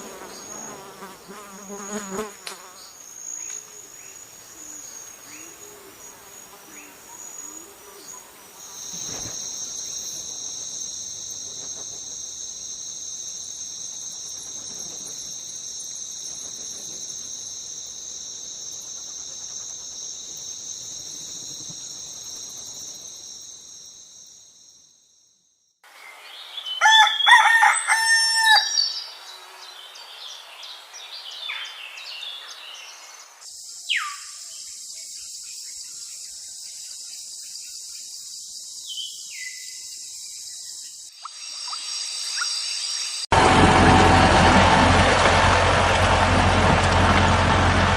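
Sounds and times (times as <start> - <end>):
insects chirring: 0.0 - 43.3
rooster crowing: 26.7 - 28.9
bird chirping: 28.7 - 43.2.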